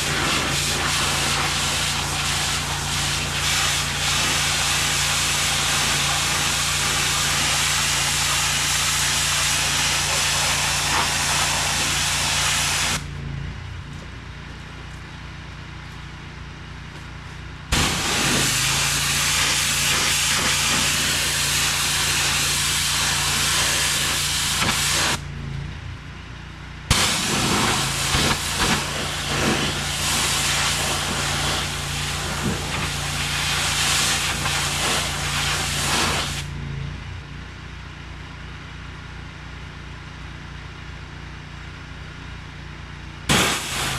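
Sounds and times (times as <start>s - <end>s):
pressure washer spray hissing: 0.0s - 13.0s, 17.7s - 25.2s, 26.9s - 36.5s, 43.3s - 43.9s
pressure washer machine hum: 0.0s - 37.3s, 43.0s - 43.9s.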